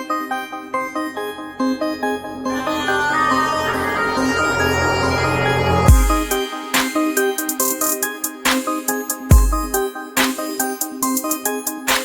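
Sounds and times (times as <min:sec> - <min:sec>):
fuller electronic sound: 0:01.2 - 0:07.8.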